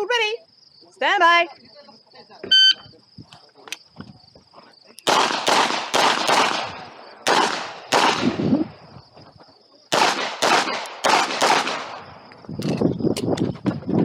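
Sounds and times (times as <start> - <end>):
handgun shots with echo: 5.0 - 8.3, 9.9 - 12.0.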